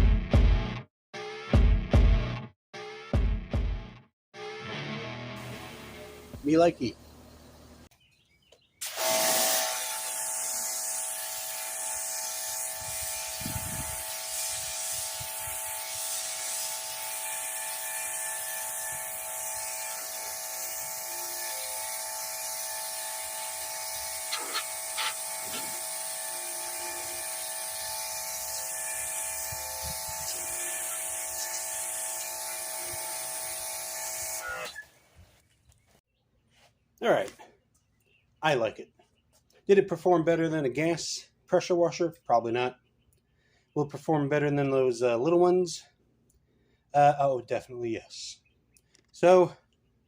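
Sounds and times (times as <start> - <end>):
pressure washer spraying: 8.8 - 34.8.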